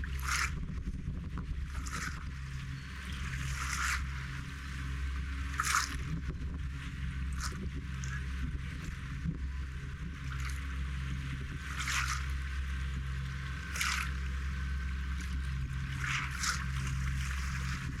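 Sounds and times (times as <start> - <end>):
small waves lapping at shore: 0.0 - 0.6, 1.7 - 2.4, 3.0 - 6.2, 10.0 - 12.8, 13.4 - 18.0
steady low rumble: 0.0 - 18.0.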